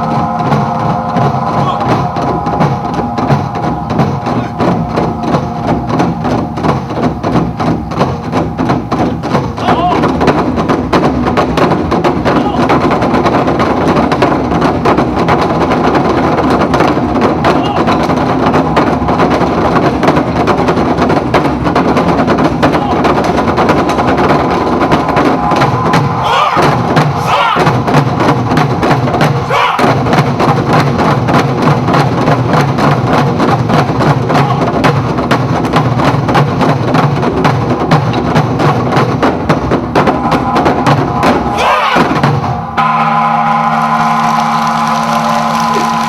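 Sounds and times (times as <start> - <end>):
short rising tones: 0.0 - 10.3, 23.2 - 30.0, 38.9 - 46.0
music with rapid percussion: 0.0 - 46.0.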